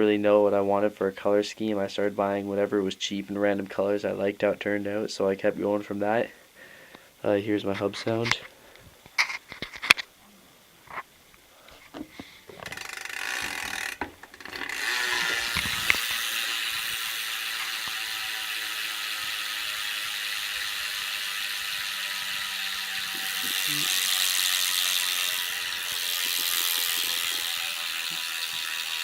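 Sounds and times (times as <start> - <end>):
bicycle hub freewheel clicking: 12.6 - 29.0.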